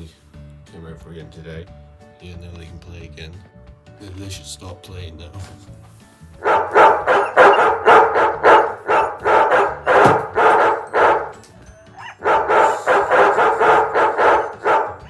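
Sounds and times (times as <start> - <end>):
dogs barking: 6.4 - 15.0.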